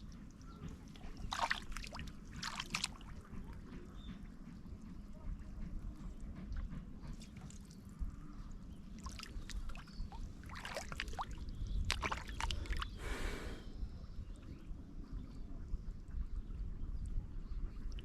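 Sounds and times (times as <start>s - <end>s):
water splashing and sloshing: 0.0s - 13.2s.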